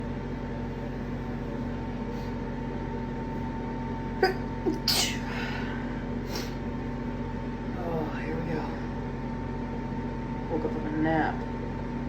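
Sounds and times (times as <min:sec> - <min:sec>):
steady background hum: 0:00.0 - 0:12.0
person sneezing: 0:04.2 - 0:05.4
sharp intake of breath: 0:05.3 - 0:06.6.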